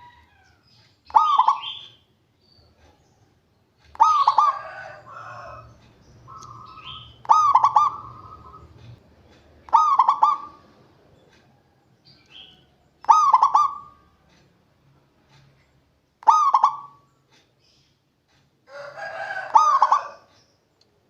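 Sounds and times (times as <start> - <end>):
dove cooing: 1.1 - 1.9, 3.9 - 5.7, 6.3 - 9.0, 9.7 - 10.8, 13.1 - 14.1, 16.2 - 17.0, 18.8 - 20.3.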